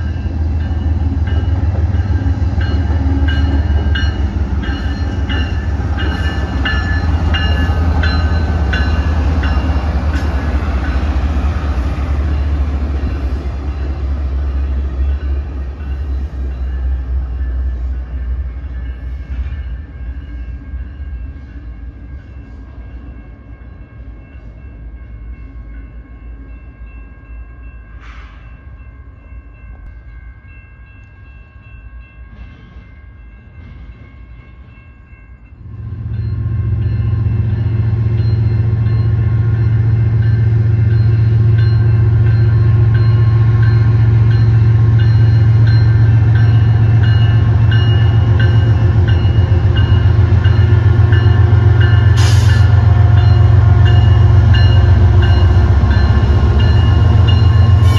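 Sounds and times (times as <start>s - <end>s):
train rumbling past: 0.0s - 57.9s
diesel locomotive engine running: 35.9s - 57.9s.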